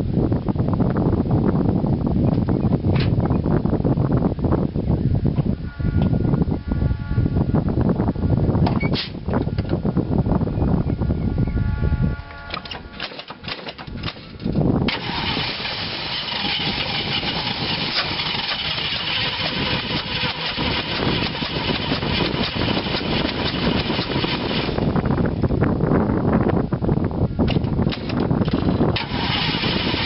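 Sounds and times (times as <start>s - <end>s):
engine cranking and starting: 12.5s - 25.0s, 27.5s - 30.0s
loud engine running: 14.9s - 25.5s, 27.9s - 30.0s.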